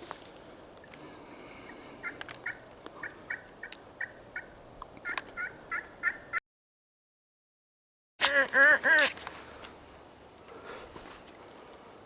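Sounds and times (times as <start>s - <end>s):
turkey clucking: 2.0s - 6.4s.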